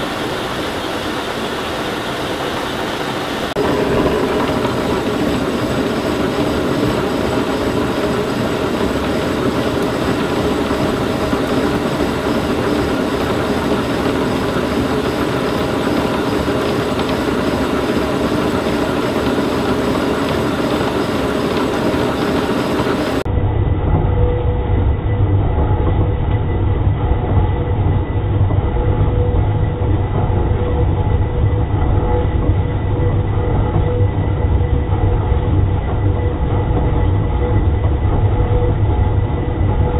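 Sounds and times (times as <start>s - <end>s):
boring mill cutting steel: 3.5s - 23.2s
deep low rumble: 23.3s - 39.9s.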